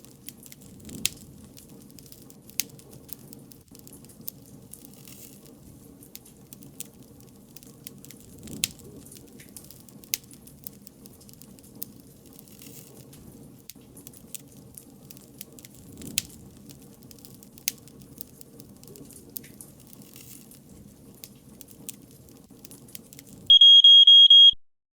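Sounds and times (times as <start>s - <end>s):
wood fire crackling: 0.0s - 24.0s
electronic buzzer: 23.5s - 24.6s.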